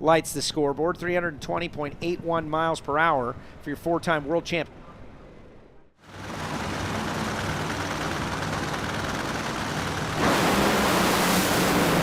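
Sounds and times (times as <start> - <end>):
drag-racing engines roaring: 6.1 - 12.0.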